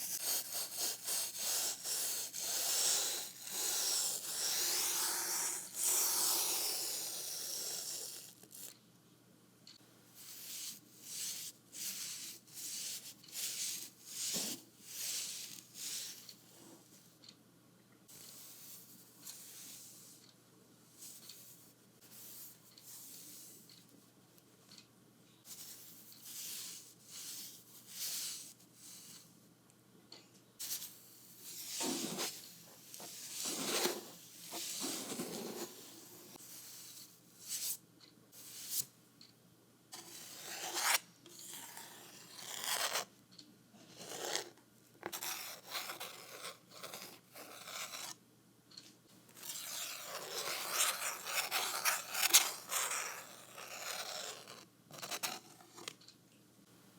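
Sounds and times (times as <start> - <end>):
painting tool scraping on board: 0.0 - 8.7, 10.2 - 16.9, 31.5 - 37.6, 49.4 - 55.9.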